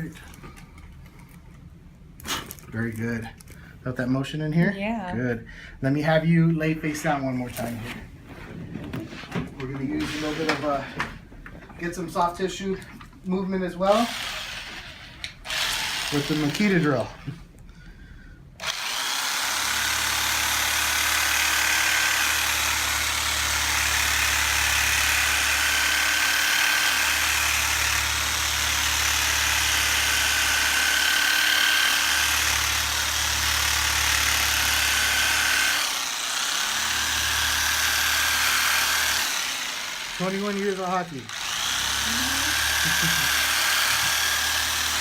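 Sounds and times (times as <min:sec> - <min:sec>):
drill humming: 0:09.9 - 0:11.1, 0:13.9 - 0:17.1, 0:18.6 - 0:45.0.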